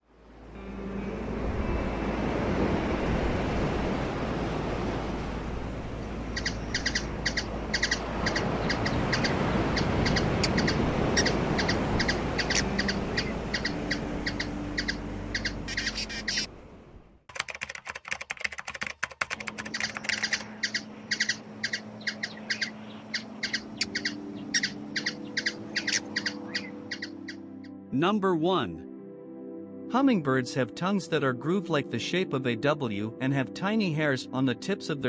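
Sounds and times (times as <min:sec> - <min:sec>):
hummingbird chipping: 0:06.3 - 0:16.5, 0:19.5 - 0:27.5.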